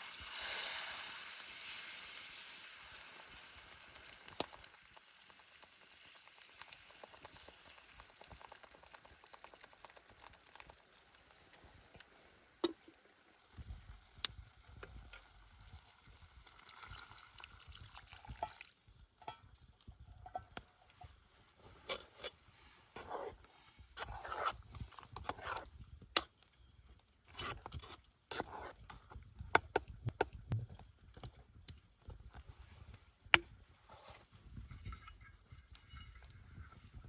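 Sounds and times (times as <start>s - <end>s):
food sizzling in oil: 0.0s - 18.7s.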